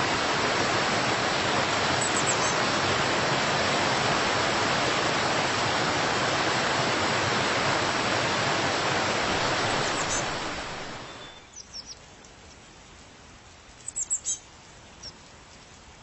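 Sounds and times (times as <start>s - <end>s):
water rushing: 0.0s - 11.4s
high bird chirps: 2.0s - 2.6s, 9.7s - 10.4s, 11.0s - 12.0s, 13.9s - 14.4s.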